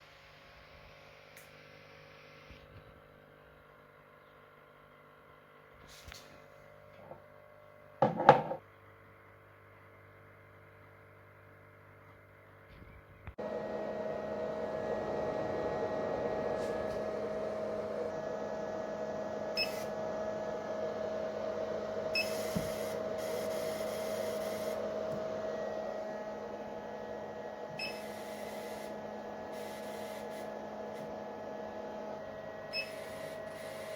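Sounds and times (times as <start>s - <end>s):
loud steady hiss with hum: 22.1s - 31.1s.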